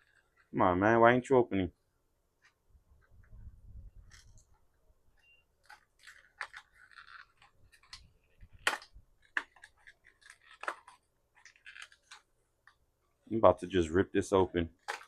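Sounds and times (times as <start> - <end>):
stiff plastic packaging crinkling: 5.6 - 12.3.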